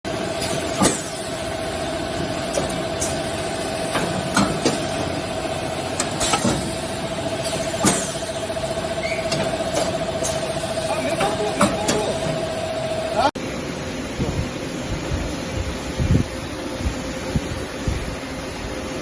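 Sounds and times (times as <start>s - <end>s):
wrapping machine humming: 0.1s - 13.3s
sharp mechanical clacks: 5.9s - 8.3s.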